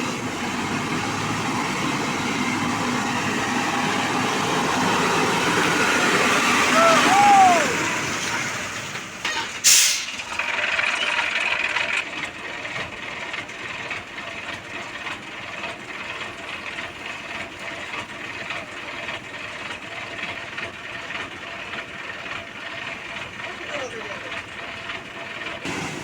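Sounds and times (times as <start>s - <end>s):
truck engine droning: 0.0s - 26.0s
short sharp hiss: 9.6s - 10.2s.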